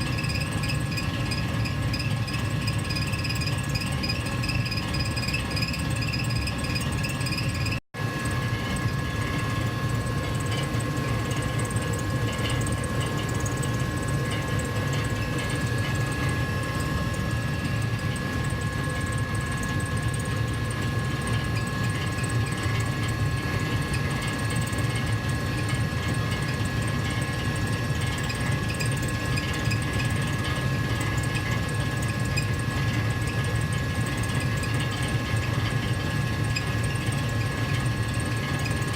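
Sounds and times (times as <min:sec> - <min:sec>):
gas furnace humming: 0:00.0 - 0:38.9.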